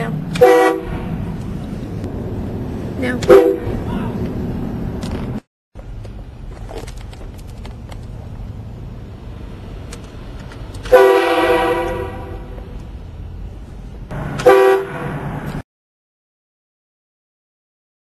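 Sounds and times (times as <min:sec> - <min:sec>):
steady low rumble: 0:00.0 - 0:15.6
train horn chord blast: 0:00.4 - 0:01.1, 0:10.9 - 0:12.6, 0:14.4 - 0:15.0.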